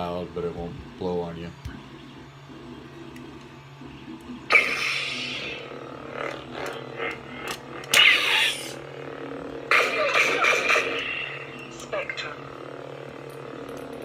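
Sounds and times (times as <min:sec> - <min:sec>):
lightsaber blade hum: 0:03.8 - 0:14.0
lightsaber crackling clash: 0:07.4 - 0:08.8.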